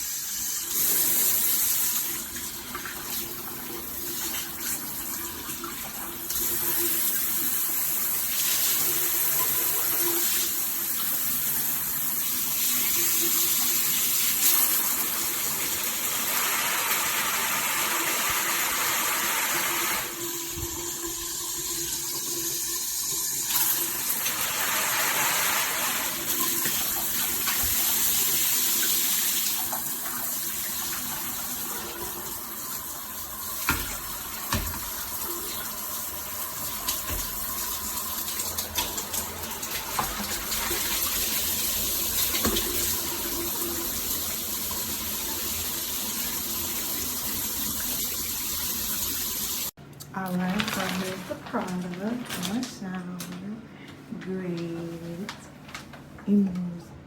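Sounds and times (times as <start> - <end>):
shower spraying water: 0.0 - 49.8.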